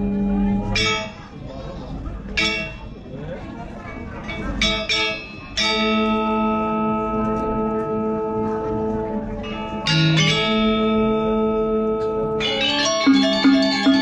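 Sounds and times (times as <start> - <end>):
metallophones and gongs ringing: 0.0 - 1.4, 2.3 - 3.4, 4.2 - 14.0
gamelan playing: 9.4 - 14.0.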